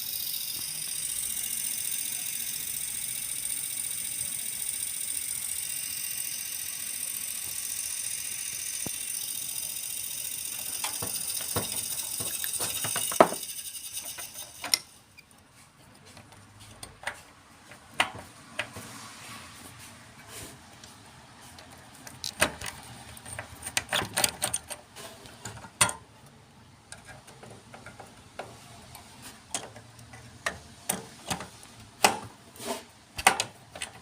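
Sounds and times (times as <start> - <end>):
computer fan whirring: 0.0 - 14.9.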